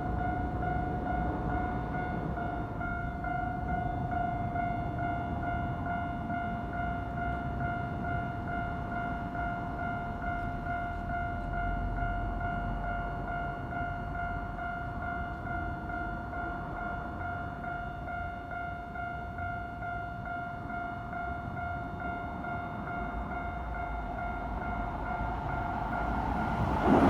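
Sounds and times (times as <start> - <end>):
train rumbling past: 19.8 - 27.0.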